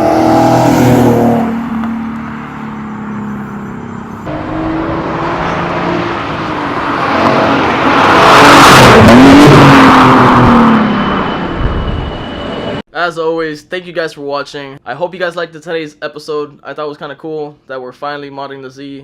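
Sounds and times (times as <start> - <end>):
car engine accelerating past: 0.0 - 11.4.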